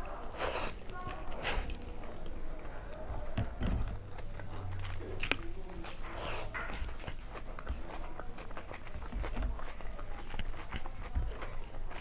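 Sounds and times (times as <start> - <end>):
person chewing food: 0.0 - 12.0.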